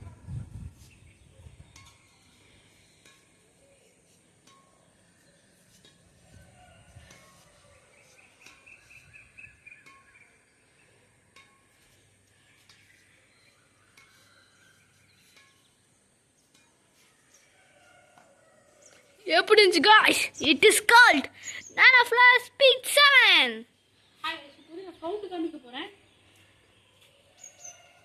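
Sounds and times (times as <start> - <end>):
birds chirping: 19.3 - 27.9.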